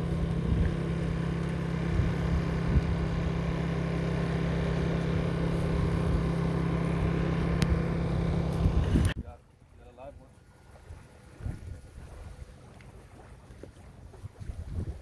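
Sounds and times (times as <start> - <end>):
low engine drone: 0.0 - 9.2.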